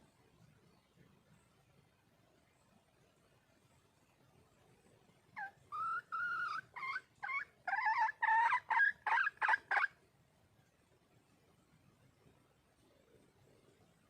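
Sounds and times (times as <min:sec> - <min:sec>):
hen calling: 0:05.4 - 0:09.9.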